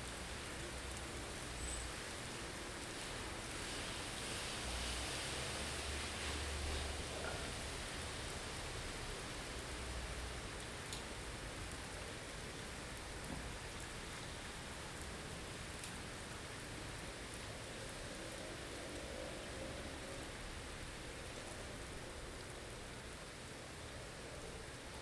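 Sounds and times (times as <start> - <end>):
hiss of wind-driven snow: 0.0 - 10.3.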